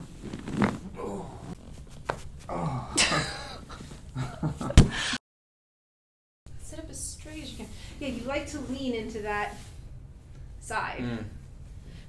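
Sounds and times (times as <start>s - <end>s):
spinal joints cracking: 0.0s - 2.3s
person making vocal sounds: 11.0s - 11.4s.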